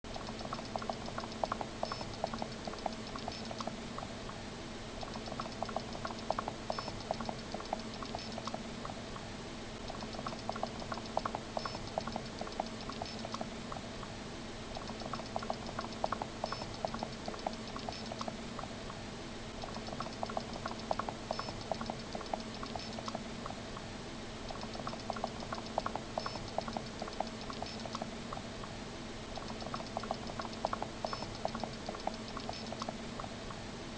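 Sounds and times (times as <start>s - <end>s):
rapid light clicking: 0.1s - 4.4s, 5.0s - 33.6s
steady low hum: 0.1s - 33.9s.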